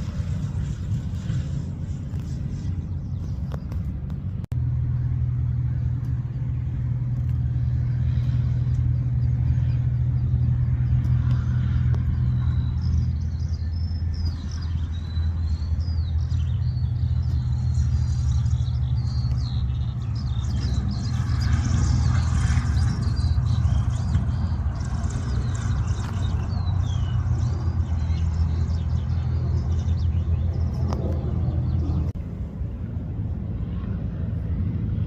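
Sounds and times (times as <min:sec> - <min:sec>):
steady low rumble: 0:00.0 - 0:35.0
birds chirping: 0:07.4 - 0:32.2.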